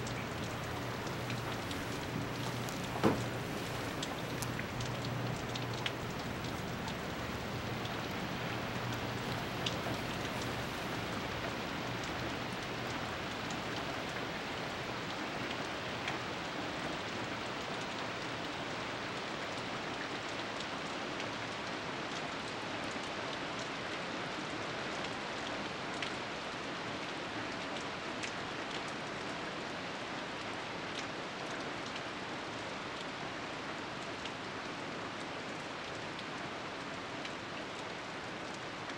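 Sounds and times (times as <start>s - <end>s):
rushing hiss of water: 0.0s - 17.6s.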